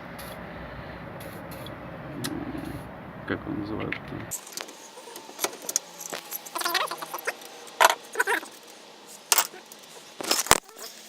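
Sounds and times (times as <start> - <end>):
metal tools clinking: 4.4 - 11.0.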